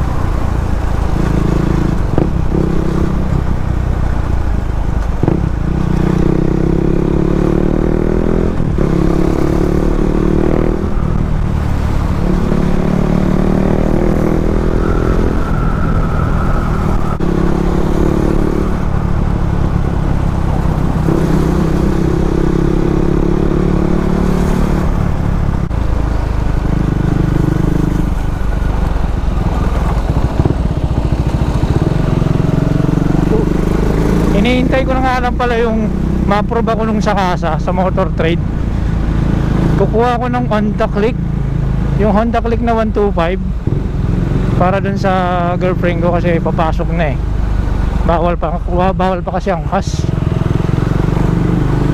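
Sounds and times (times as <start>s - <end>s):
motorcycle engine revving: 0.0s - 51.9s
wind rumble on microphone: 23.7s - 34.6s.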